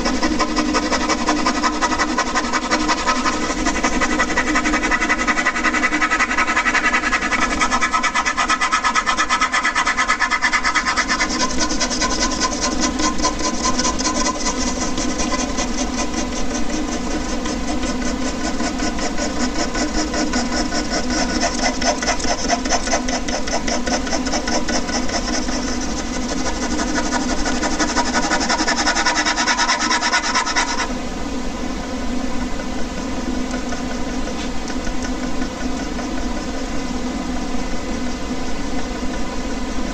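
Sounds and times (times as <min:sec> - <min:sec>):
pen rubbing on paper: 0:00.0 - 0:30.9
air conditioner drone: 0:00.0 - 0:39.9.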